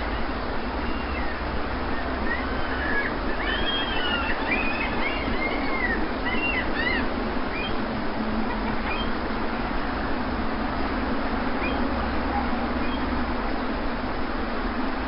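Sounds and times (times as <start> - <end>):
birds chirping: 0.0 - 10.3, 11.4 - 13.3
sea surf: 0.0 - 15.0.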